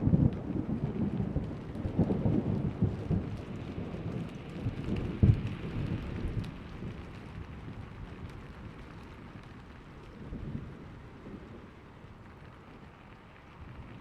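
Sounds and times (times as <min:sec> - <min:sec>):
thunder rumbling: 0:00.0 - 0:09.4
raindrops pattering: 0:00.0 - 0:14.0.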